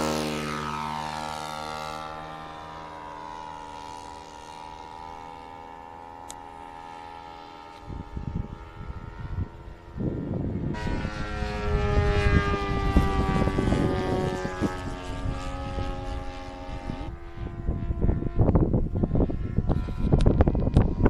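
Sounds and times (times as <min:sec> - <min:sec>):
model airplane engine flying past: 0:00.0 - 0:21.0
wind buffeting microphone: 0:06.7 - 0:21.0.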